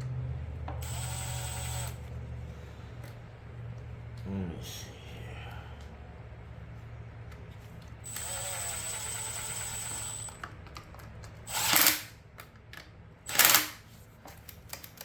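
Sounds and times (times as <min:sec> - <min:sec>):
power drill whining: 0:00.8 - 0:02.0, 0:08.0 - 0:10.4, 0:11.5 - 0:12.0.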